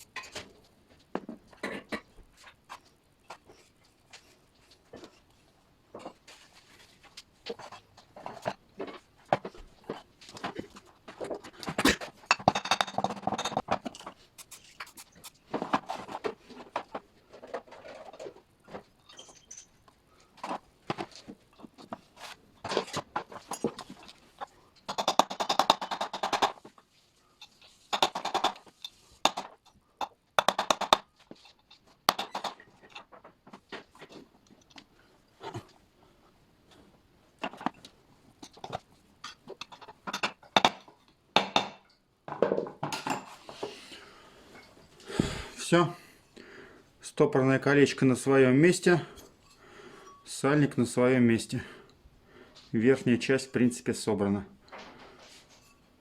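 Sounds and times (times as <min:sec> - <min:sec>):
metal parts and tools clinking: 0:16.8 - 0:20.6, 0:31.3 - 0:33.3.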